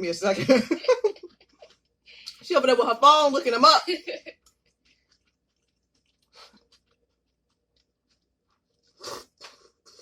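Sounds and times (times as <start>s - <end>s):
person chewing food: 0.9s - 2.4s, 4.3s - 10.0s.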